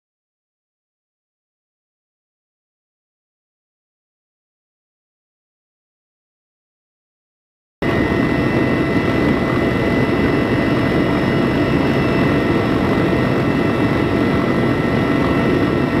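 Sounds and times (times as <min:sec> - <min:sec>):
aircraft engine with high whine: 0:07.8 - 0:16.0.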